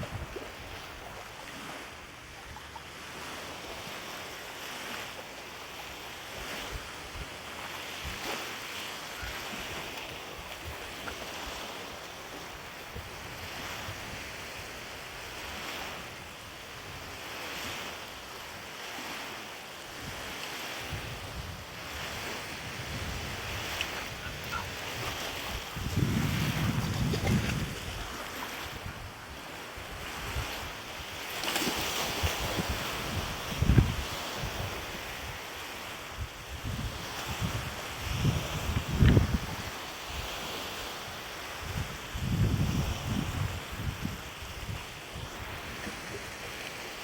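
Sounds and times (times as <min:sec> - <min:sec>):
wind rumbling on microphone: 0:00.0 - 0:04.0, 0:12.5 - 0:17.9, 0:19.9 - 0:40.8, 0:41.4 - 0:46.9
waves washing on shore: 0:00.0 - 0:47.0.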